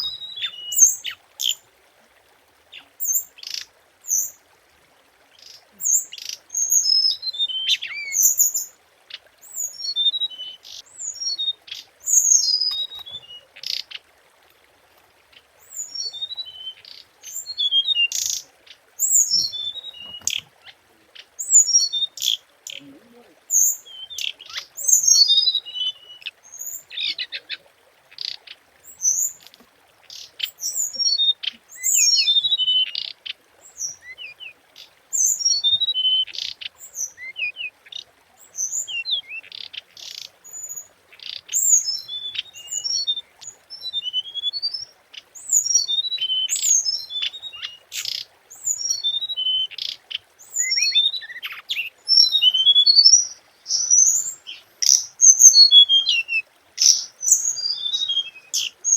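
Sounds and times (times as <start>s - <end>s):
bird sharp calls: 0.0s - 1.6s, 15.6s - 58.9s
songbird singing: 0.0s - 1.6s, 2.6s - 4.4s, 5.2s - 58.9s.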